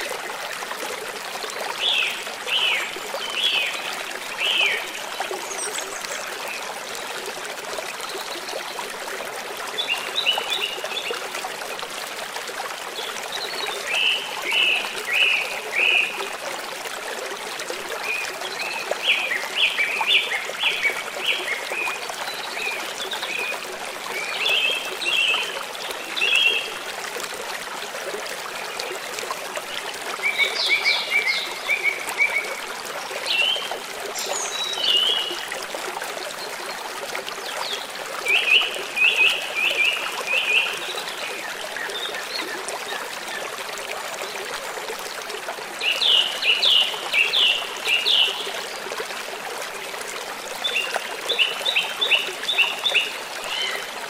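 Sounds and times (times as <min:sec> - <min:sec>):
stream water rushing: 0:00.0 - 0:54.0.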